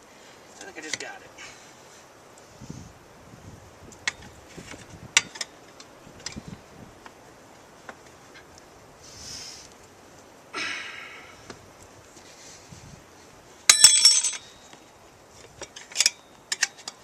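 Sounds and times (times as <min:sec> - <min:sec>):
soft hiss: 0:00.0 - 0:17.0.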